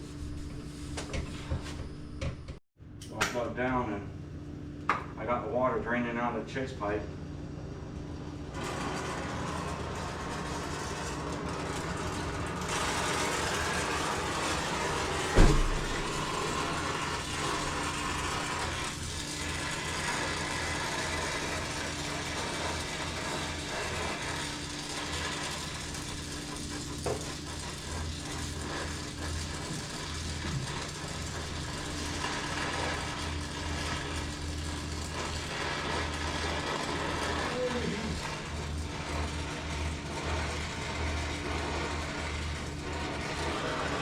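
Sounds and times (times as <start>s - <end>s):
machine motor humming: 8.2s - 44.0s
sharp knock: 15.4s - 16.0s.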